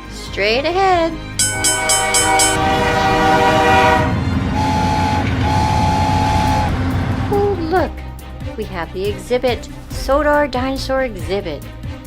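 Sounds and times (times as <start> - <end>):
train whistle: 1.4 - 7.7
train clattering rumble: 1.4 - 8.0.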